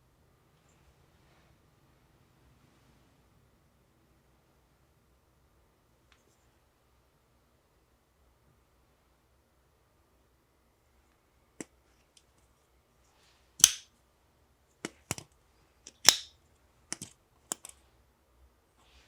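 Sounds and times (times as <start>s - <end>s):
folding knife clicks and snaps: 13.6s - 13.9s, 15.9s - 17.8s.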